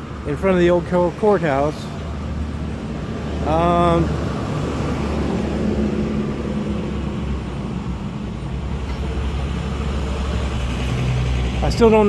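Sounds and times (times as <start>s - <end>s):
vehicle engine humming: 0.0s - 12.0s.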